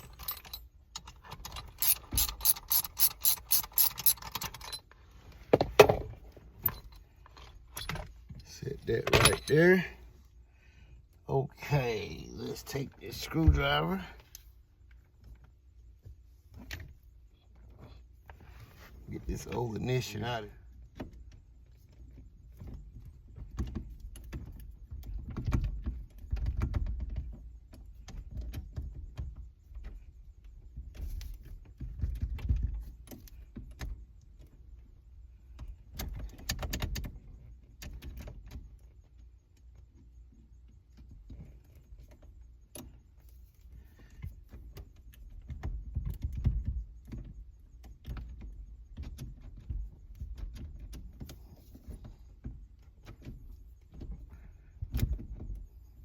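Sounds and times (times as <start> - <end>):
screwdriver clicking and scraping metal: 0.0 - 4.9.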